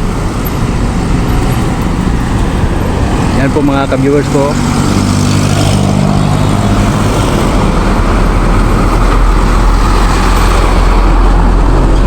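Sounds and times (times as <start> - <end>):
road traffic rumble: 0.0 - 12.0.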